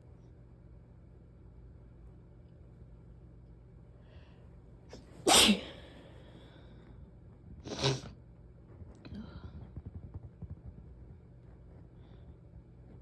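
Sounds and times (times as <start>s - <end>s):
person sneezing: 5.3s - 5.9s, 7.7s - 8.1s.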